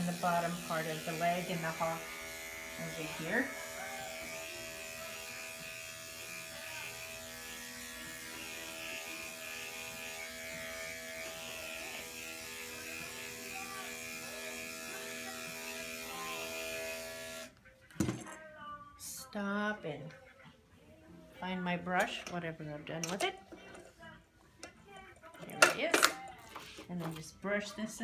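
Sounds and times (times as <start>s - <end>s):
electric clippers humming: 0.0s - 17.6s.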